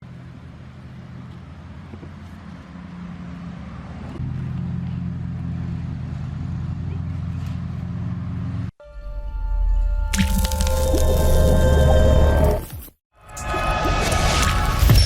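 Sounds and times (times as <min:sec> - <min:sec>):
engine droning: 0:00.0 - 0:08.7.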